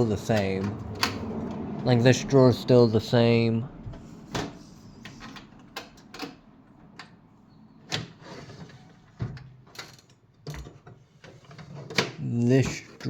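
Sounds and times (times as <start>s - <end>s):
drawer clunks and rattles: 7.9s - 12.9s.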